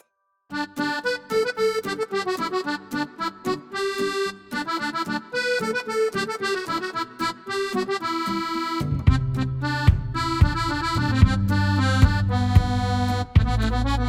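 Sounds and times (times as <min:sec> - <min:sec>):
accordion playing a bouncy tune: 0:00.5 - 0:14.0.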